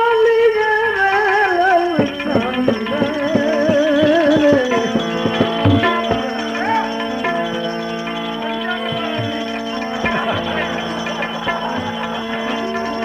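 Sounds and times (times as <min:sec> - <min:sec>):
sustained instrumental notes: 0:00.0 - 0:13.0
hand drum strokes: 0:01.3 - 0:13.0.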